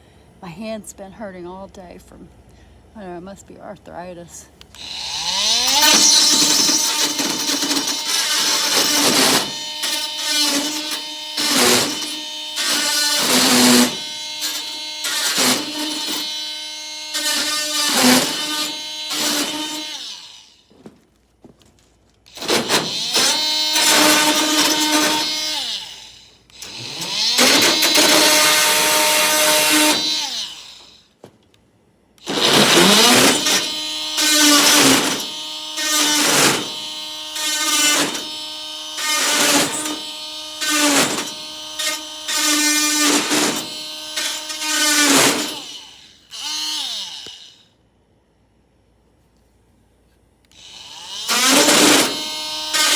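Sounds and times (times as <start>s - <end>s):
multi-tool cutting wire mesh: 4.8s - 20.6s, 22.3s - 31.0s, 32.2s - 47.4s, 50.5s - 52.9s.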